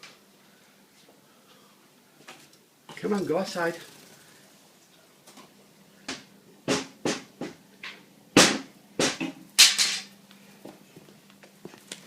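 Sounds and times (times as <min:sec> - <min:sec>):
sharp knocks and thumps: 0:06.1 - 0:10.0.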